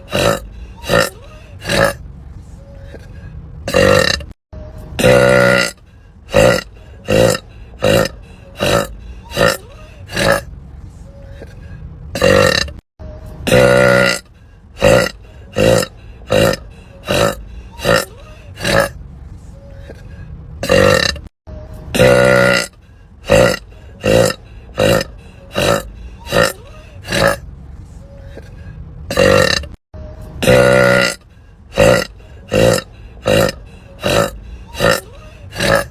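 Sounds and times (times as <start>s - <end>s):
women burping: 0.0s - 2.0s, 3.7s - 4.4s, 5.0s - 10.4s, 13.5s - 14.2s, 14.8s - 18.9s, 20.6s - 21.3s, 22.0s - 22.7s, 23.3s - 27.4s, 29.1s - 29.8s, 30.4s - 31.2s, 31.8s - 35.9s.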